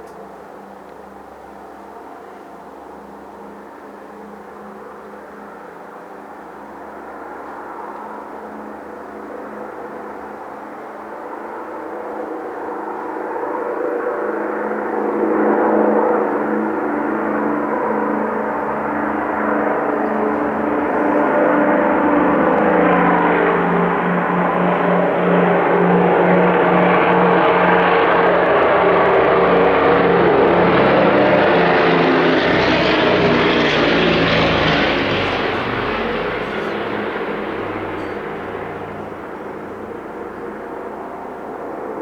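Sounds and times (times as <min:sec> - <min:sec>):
propeller aircraft engine drone: 0:00.0 - 0:42.0.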